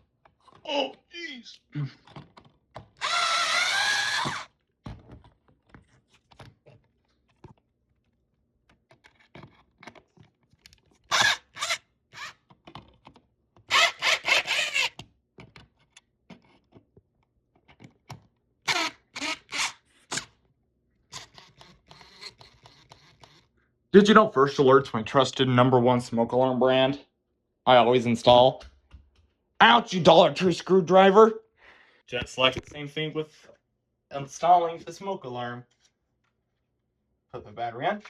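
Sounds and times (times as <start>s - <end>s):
screwdriver rasping: 3.0s - 4.5s, 11.1s - 12.8s, 13.7s - 15.1s, 21.1s - 23.5s.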